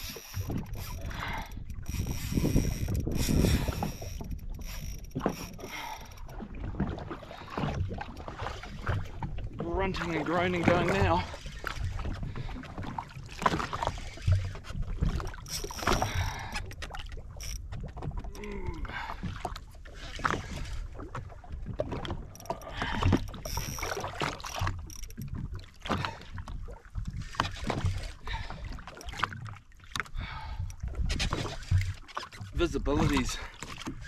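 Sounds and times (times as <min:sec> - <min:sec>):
wind on microphone: 0:00.0 - 0:05.7
electric fishing reel groaning: 0:00.0 - 0:06.4, 0:15.4 - 0:17.6, 0:22.3 - 0:25.2
water slapping against hull: 0:00.0 - 0:34.0.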